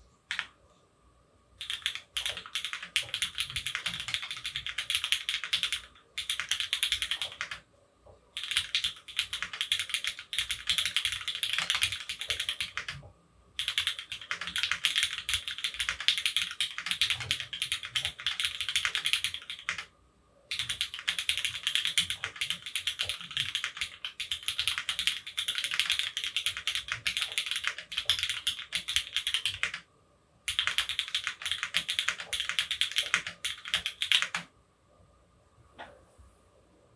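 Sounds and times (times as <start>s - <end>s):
typing on mechanical keyboard: 0.3s - 0.5s, 1.6s - 7.6s, 8.4s - 19.9s, 20.5s - 29.8s, 30.5s - 34.5s.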